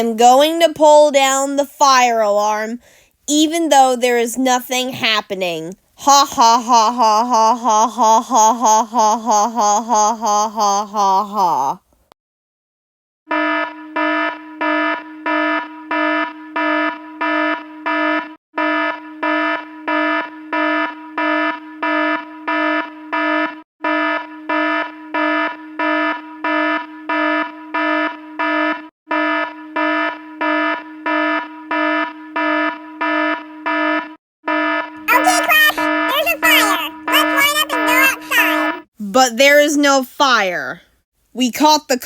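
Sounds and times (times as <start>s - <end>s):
fire alarm buzzing horn: 13.3s - 38.9s.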